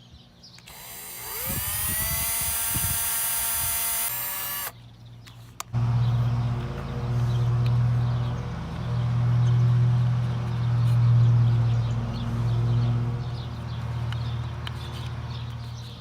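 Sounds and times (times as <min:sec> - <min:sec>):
electric drill whining: 0:00.6 - 0:04.8
loud steady low hum: 0:05.8 - 0:13.8.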